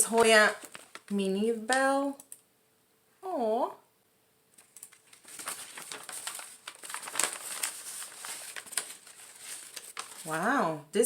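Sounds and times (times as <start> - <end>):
plastic packaging crinkling: 0.0 - 1.9, 4.5 - 10.6.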